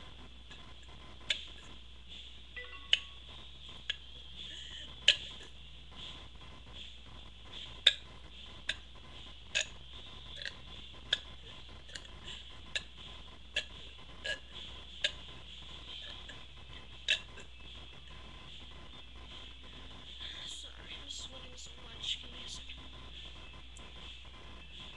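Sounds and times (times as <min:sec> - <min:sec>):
clicks in the throat: 0:07.8 - 0:08.1, 0:09.5 - 0:09.7, 0:12.7 - 0:12.9, 0:17.1 - 0:17.5.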